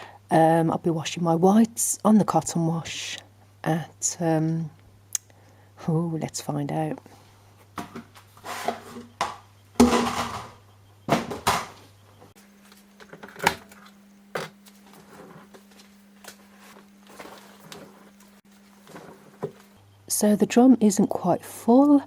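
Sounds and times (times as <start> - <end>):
fabric rustling: 14.7 - 19.8.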